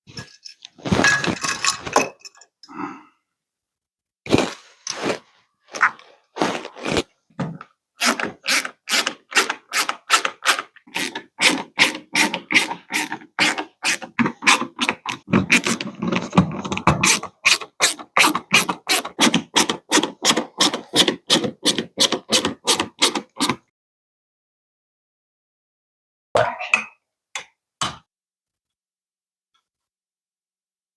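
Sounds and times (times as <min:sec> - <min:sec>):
hand tool scraping: 0:08.0 - 0:23.6.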